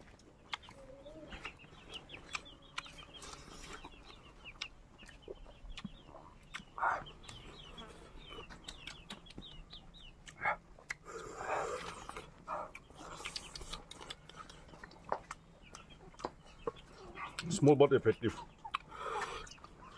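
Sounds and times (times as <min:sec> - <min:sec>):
birds chirping: 0:00.0 - 0:19.9.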